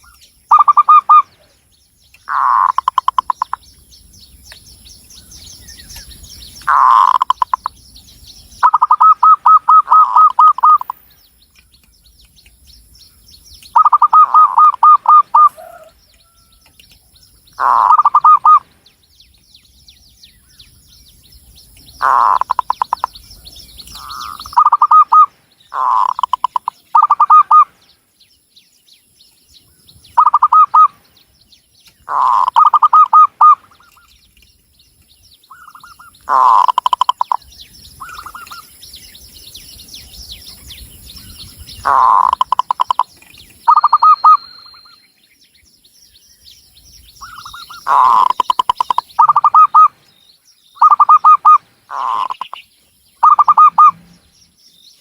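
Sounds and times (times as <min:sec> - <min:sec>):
small birds chirping: 0:00.0 - 0:55.0
dove cooing: 0:00.5 - 0:01.5, 0:08.6 - 0:11.0, 0:13.8 - 0:16.0, 0:17.6 - 0:18.7, 0:23.9 - 0:27.7, 0:30.2 - 0:30.9, 0:32.1 - 0:33.9, 0:36.3 - 0:37.4, 0:41.8 - 0:43.0, 0:47.2 - 0:50.0, 0:50.8 - 0:52.6, 0:53.2 - 0:54.1.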